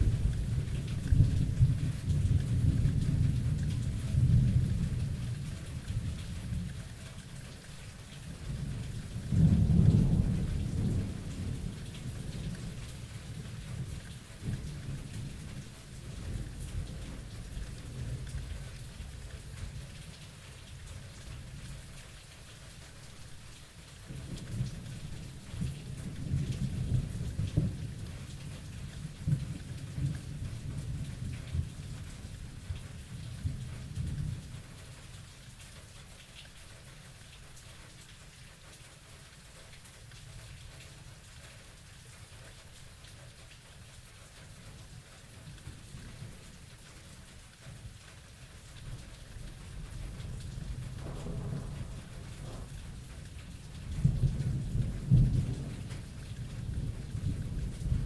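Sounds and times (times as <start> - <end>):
steady rain hissing: 0.0 - 58.0
thunder rolling: 49.6 - 52.8
thunder clap: 50.1 - 52.7.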